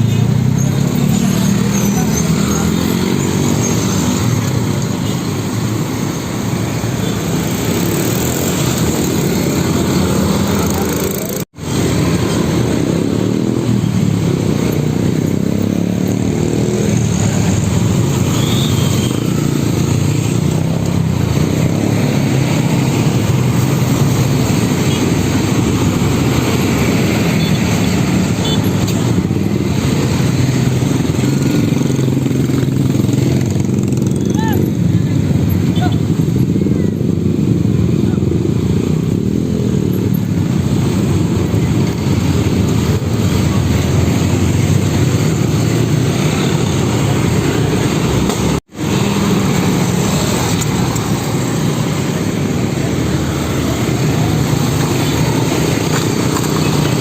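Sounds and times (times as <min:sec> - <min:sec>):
road traffic noise: 0:00.0 - 0:57.0.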